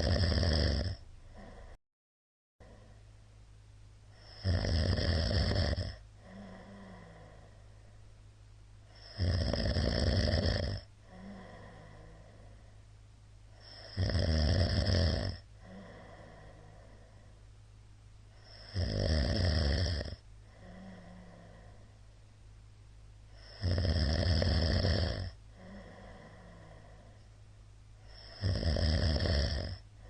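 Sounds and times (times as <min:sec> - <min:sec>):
man snoring loudly: 0:00.0 - 0:01.7, 0:04.2 - 0:07.4, 0:08.9 - 0:12.0, 0:13.6 - 0:16.3, 0:18.4 - 0:21.3, 0:23.4 - 0:26.8, 0:28.0 - 0:29.8
quiet breathing: 0:00.0 - 0:01.8, 0:02.6 - 0:03.4, 0:04.0 - 0:22.6, 0:23.2 - 0:30.0.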